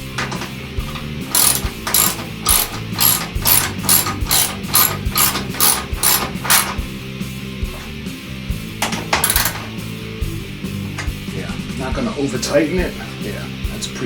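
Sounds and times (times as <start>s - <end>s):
ratchet clicking: 0.0s - 6.9s, 8.8s - 9.8s.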